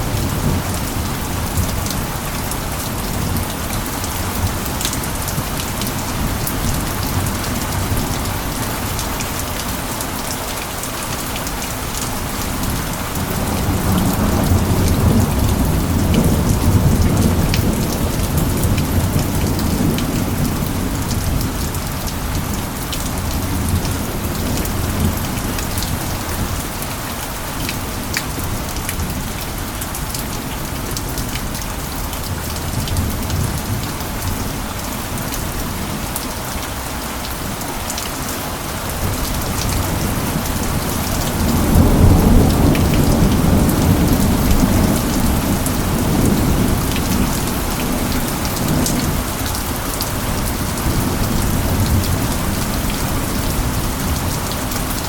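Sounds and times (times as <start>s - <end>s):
steady rainfall: 0.0s - 55.0s
thunder rumbling: 39.0s - 49.3s.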